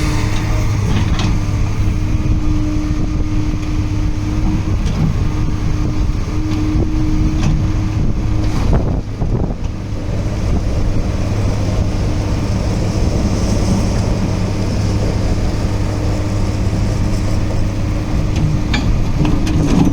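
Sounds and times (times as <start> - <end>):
diesel excavator engine running: 0.0 - 19.9.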